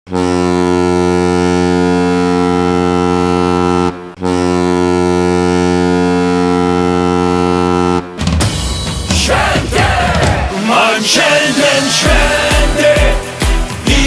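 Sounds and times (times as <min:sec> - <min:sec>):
goal horn blasting: 0:00.1 - 0:08.2.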